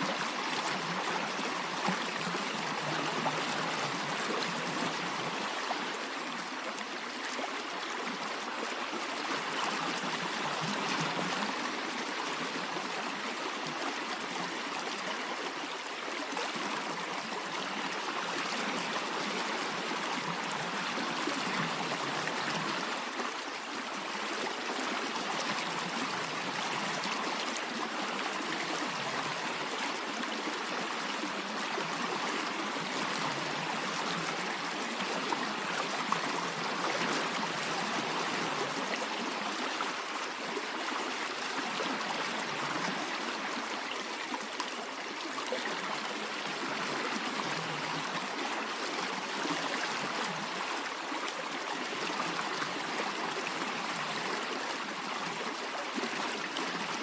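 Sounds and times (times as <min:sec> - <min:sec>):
stream rushing and trickling: 0:00.0 - 0:57.0.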